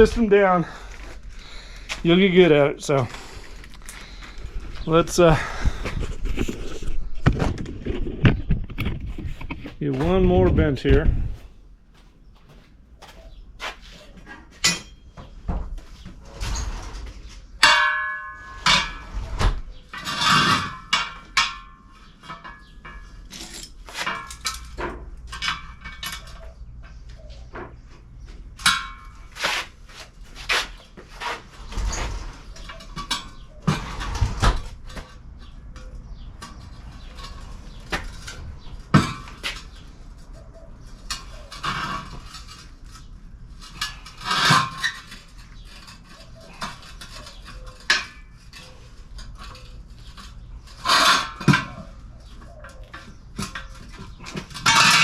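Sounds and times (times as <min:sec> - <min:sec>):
metal clanks and knocks: 0:14.3 - 0:27.0, 0:28.6 - 0:29.4, 0:31.2 - 0:39.9, 0:41.0 - 0:55.0.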